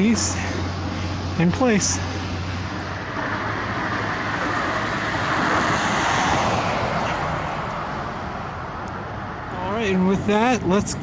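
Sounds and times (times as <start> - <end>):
vehicle passing: 3.7 - 8.8.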